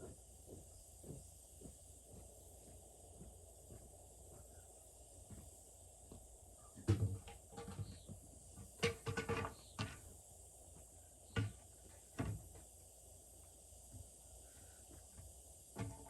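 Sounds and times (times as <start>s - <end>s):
wooden knocks and clunks: 6.8s - 10.1s, 11.3s - 12.7s, 15.8s - 16.0s.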